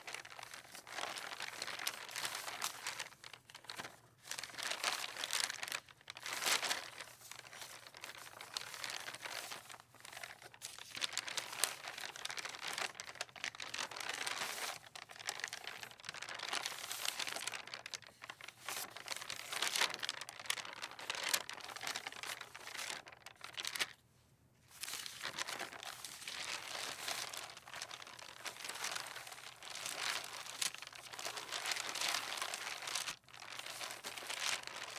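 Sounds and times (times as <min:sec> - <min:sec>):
paper rustling in wind: 0:00.0 - 0:24.0, 0:24.7 - 0:34.9.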